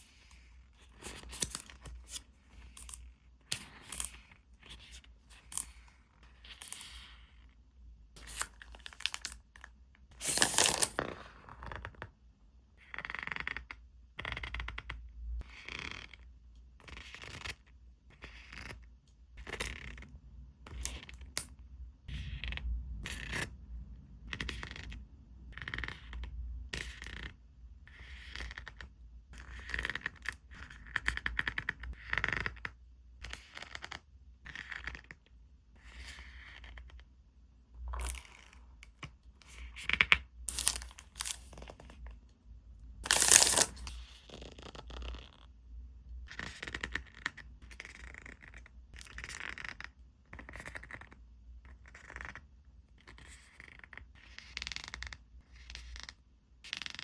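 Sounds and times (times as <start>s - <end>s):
packaging rustling: 10.2s - 11.0s, 40.5s - 41.6s, 43.0s - 44.0s.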